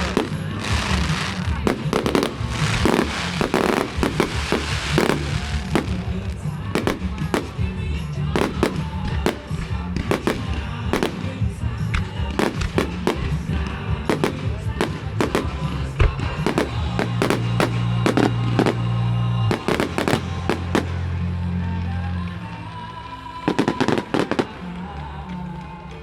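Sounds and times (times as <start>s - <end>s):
fireworks bangs and cracks: 0.0s - 22.8s, 23.4s - 26.0s.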